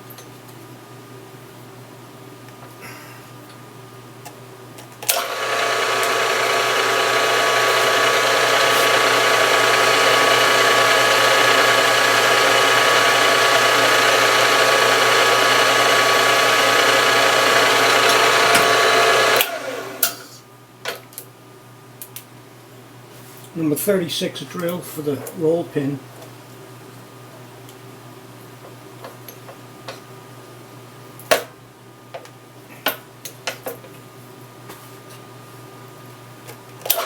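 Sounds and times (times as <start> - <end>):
drilling machine motor running: 5.1 - 20.2.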